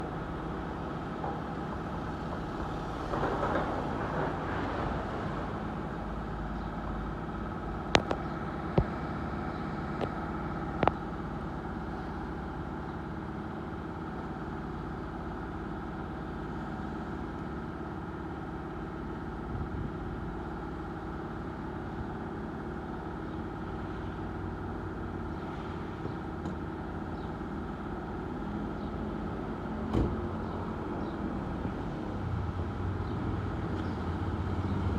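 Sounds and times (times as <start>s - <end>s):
heavy machinery engine running: 0.0s - 34.9s.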